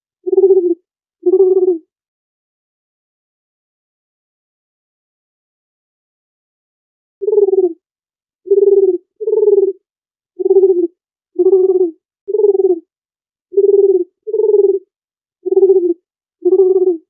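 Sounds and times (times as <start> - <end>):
dove cooing: 0.2 - 1.8, 7.2 - 7.8, 8.5 - 9.8, 10.4 - 12.9, 13.6 - 17.0.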